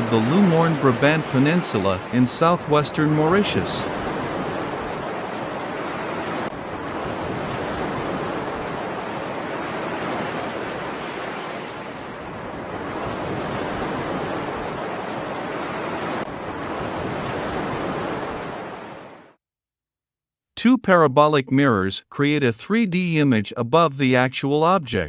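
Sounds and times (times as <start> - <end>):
ocean surf waves: 0.0 - 19.4.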